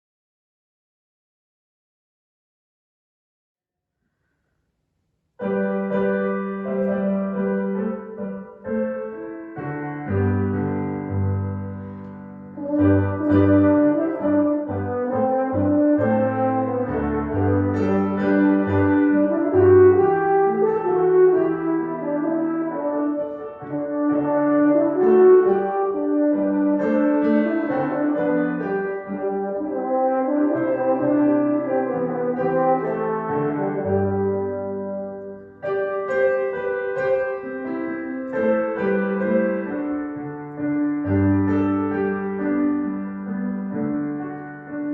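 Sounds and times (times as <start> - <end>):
piano chords: 5.4 - 44.9
horn-like melody: 12.6 - 44.9.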